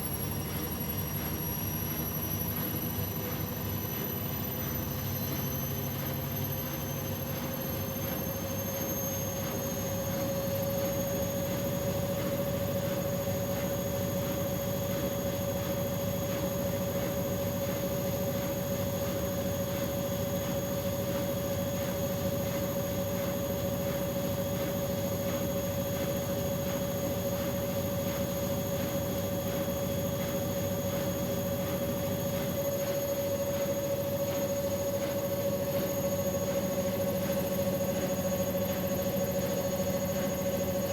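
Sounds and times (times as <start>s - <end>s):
washing machine motor whine: 0.0s - 40.9s.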